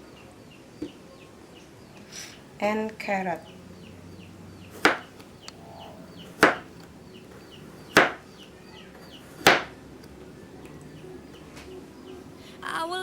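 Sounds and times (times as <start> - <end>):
knife chopping on cutting board: 4.8 - 5.1, 6.3 - 6.7, 7.9 - 8.2, 9.3 - 9.7.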